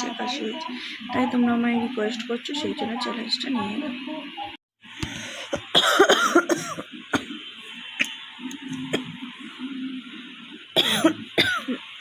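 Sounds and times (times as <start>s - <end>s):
woman coughing: 5.4s - 7.3s, 10.8s - 11.8s.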